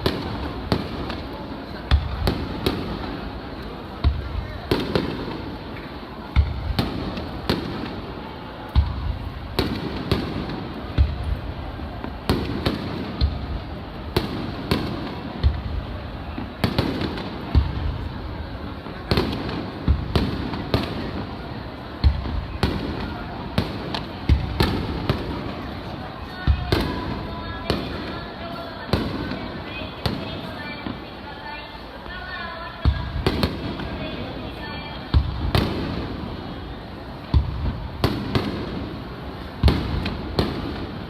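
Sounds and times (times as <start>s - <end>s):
fireworks booming: 0.0s - 31.0s, 32.7s - 41.0s
fireworks pops and crackles: 0.0s - 31.3s, 32.0s - 41.0s.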